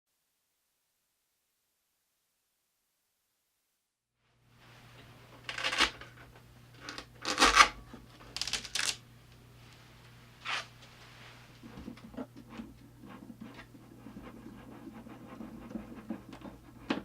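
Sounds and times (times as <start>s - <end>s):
low steady hum: 4.4s - 17.0s
rubbing or scraping: 10.4s - 17.0s.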